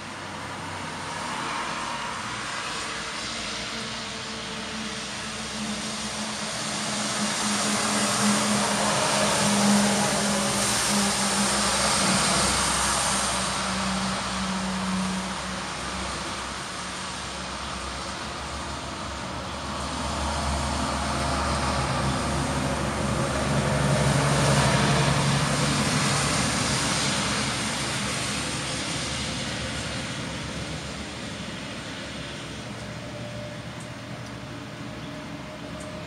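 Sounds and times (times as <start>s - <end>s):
aircraft flying past: 0.7s - 33.4s.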